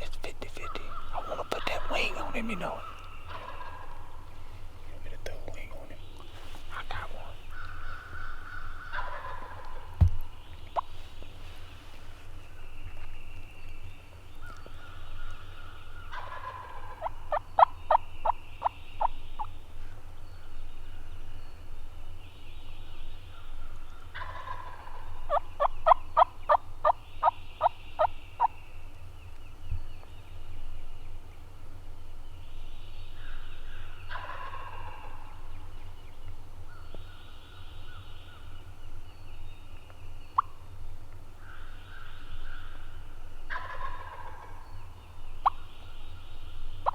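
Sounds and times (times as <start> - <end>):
turkey gobbling: 0.0 - 4.4, 5.0 - 11.6, 16.1 - 18.0, 24.2 - 27.0, 34.1 - 35.4, 43.5 - 44.6.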